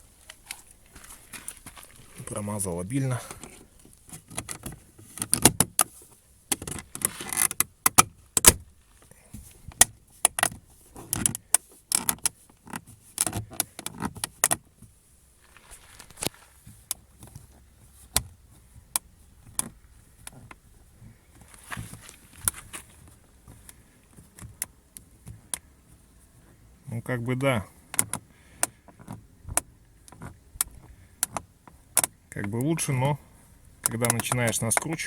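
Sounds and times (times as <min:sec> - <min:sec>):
handle creaking: 0:00.0 - 0:14.8, 0:15.4 - 0:35.0.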